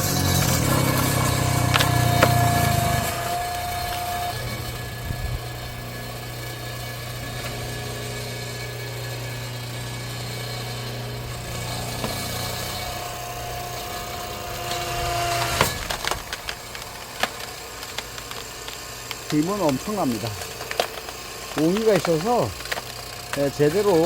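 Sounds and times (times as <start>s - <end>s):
wood snapping: 0.0s - 4.8s, 10.8s - 24.0s
high whine: 0.0s - 24.0s
hydraulic log splitter running: 0.0s - 24.0s
wood cracking: 0.0s - 24.0s.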